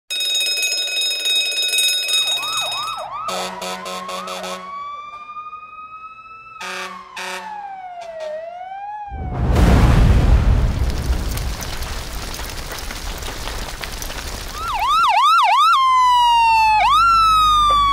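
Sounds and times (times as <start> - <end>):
fast yelping siren: 2.2 - 9.4, 14.6 - 17.9
wailing siren: 2.2 - 9.6, 14.5 - 17.9
steady horn-like siren tone: 2.4 - 9.6
short horn blasts: 6.6 - 7.5.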